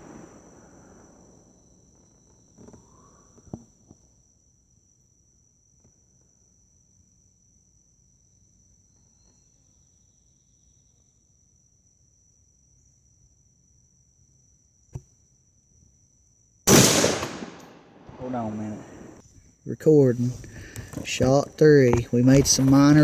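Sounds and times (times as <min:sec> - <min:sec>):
high-pitched insect chorus: 0:00.0 - 0:23.0.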